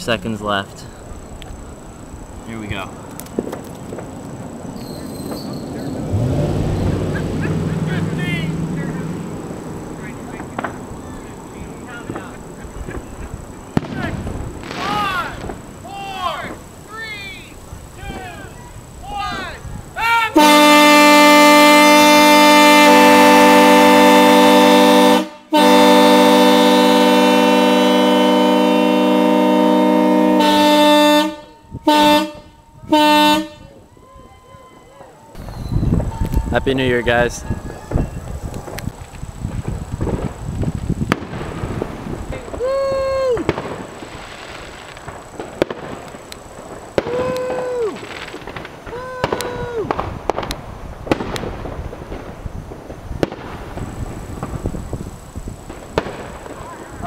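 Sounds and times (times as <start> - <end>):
fireworks cracking and popping: 1.3 - 6.1, 7.9 - 24.0, 33.6 - 57.0
train air horn blasting: 20.3 - 33.8.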